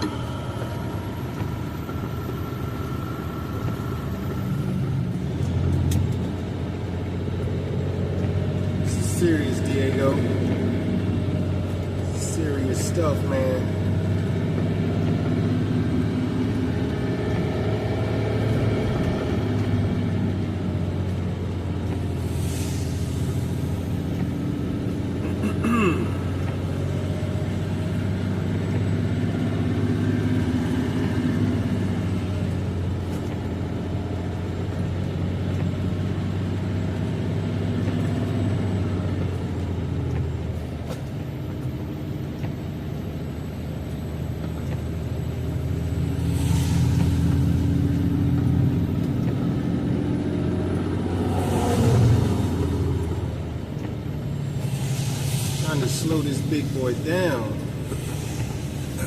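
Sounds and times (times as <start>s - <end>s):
truck engine droning: 0.0s - 59.0s
short bursts of hiss: 54.5s - 56.8s.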